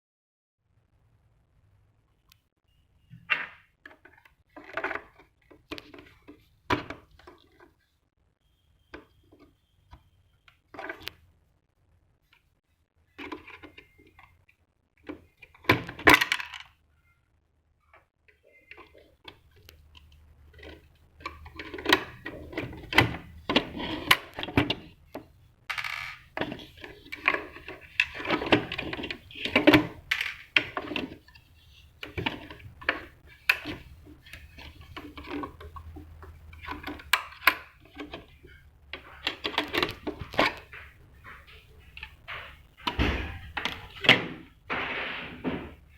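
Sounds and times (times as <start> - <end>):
plastic and metal parts rattling: 3.3 - 7.8, 13.1 - 14.4, 15.1 - 16.8, 18.7 - 44.6.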